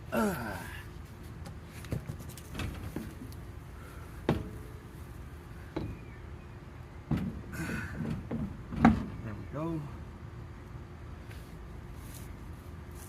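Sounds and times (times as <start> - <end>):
knocks and clunks of wheel: 4.2 - 4.8, 5.6 - 6.2, 7.0 - 9.4.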